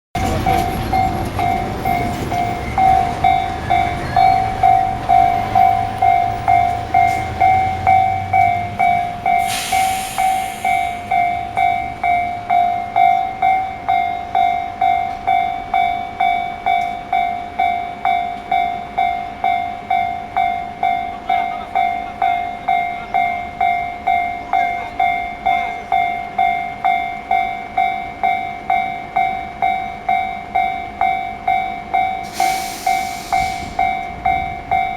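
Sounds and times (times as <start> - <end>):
level crossing warning bell: 0.1 - 34.9
short hiss: 9.4 - 11.1, 32.3 - 33.8.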